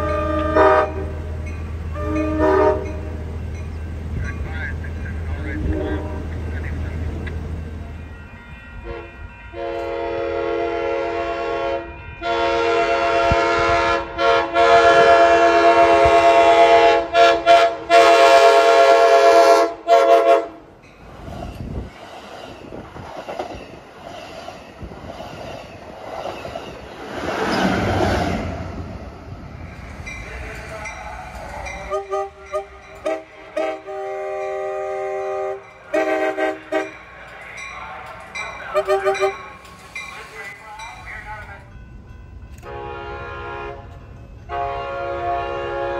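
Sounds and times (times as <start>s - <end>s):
train horn blasts: 0.0s - 3.4s, 5.5s - 6.4s, 8.8s - 20.7s, 31.9s - 37.0s, 38.8s - 39.4s, 42.6s - 45.9s
train rumbling on rails: 0.0s - 45.9s.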